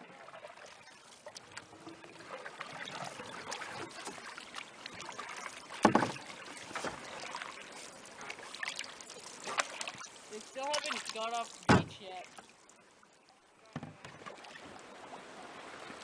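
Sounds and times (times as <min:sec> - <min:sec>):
paddles splashing water: 0:00.0 - 0:16.0
loud hollow thump: 0:11.7 - 0:12.0.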